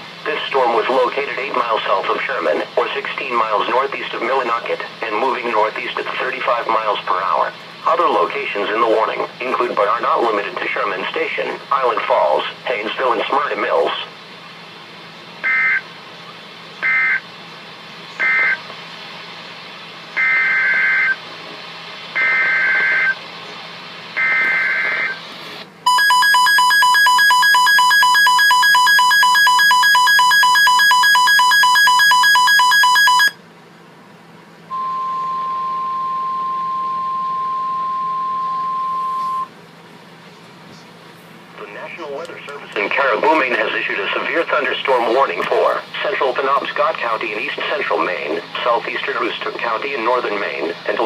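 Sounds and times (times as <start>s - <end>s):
harsh two-tone attention signal: 15.4s - 15.8s, 16.8s - 17.2s, 18.2s - 18.6s, 20.2s - 21.2s, 22.2s - 23.2s, 24.2s - 25.2s, 25.9s - 33.4s, 34.7s - 39.5s
warbling data beeps: 18.2s - 18.6s, 22.2s - 23.2s, 24.2s - 25.2s, 34.7s - 39.5s
steady single tone: 34.7s - 39.5s.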